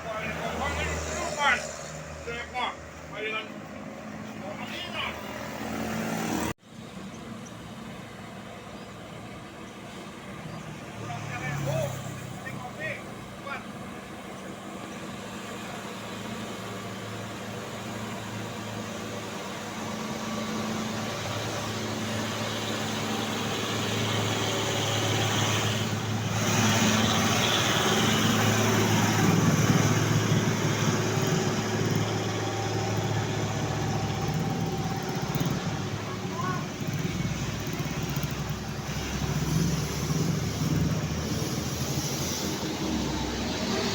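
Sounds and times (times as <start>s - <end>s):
road noise: 0.0s - 43.9s
vehicle engine humming: 0.0s - 43.9s.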